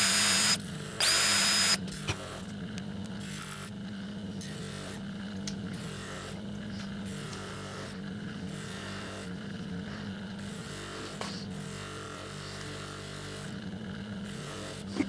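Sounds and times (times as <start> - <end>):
power tool humming: 0.0 - 2.4.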